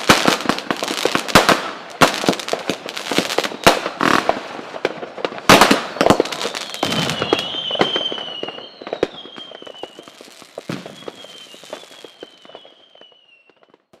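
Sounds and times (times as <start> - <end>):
fireworks crackling and popping: 0.0 - 14.0
high firework whistle: 3.2 - 4.2, 5.6 - 13.8.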